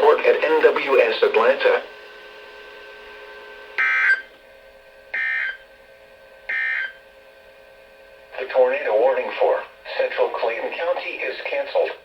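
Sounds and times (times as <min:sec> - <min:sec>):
faint radio hum: 0:08.3 - 0:12.0.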